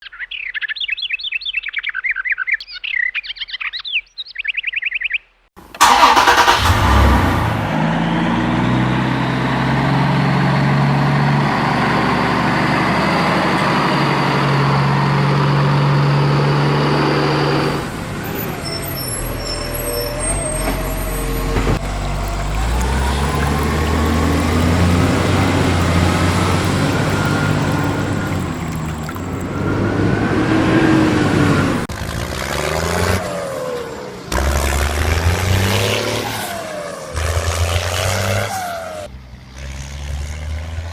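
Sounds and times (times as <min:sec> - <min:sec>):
bird-like chirps: 0:00.0 - 0:05.4
vehicle engine revving: 0:05.8 - 0:19.4, 0:20.5 - 0:40.9.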